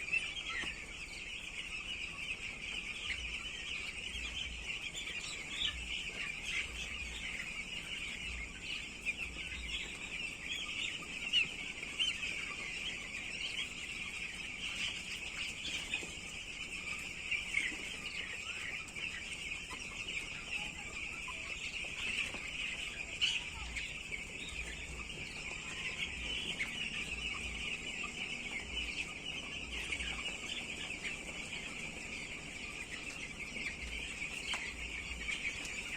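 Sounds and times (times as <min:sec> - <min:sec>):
chickens calling: 0:00.0 - 0:35.9.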